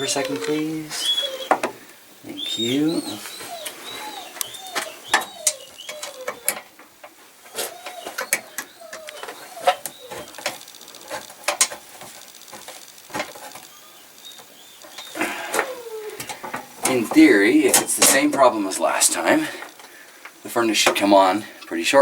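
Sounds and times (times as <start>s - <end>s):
high squeaky whines: 0.0s - 6.8s, 7.4s - 19.8s
sharp clicks and small knocks: 4.4s - 18.2s.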